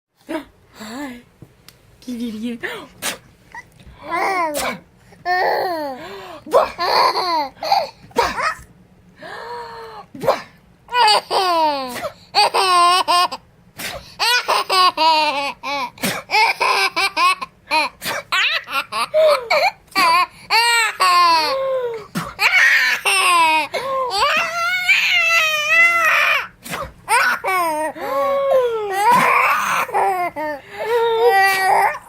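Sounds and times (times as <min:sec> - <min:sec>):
baby laughing and giggling: 0:05.3 - 0:08.7, 0:10.9 - 0:13.4, 0:14.2 - 0:26.4, 0:27.1 - 0:32.0.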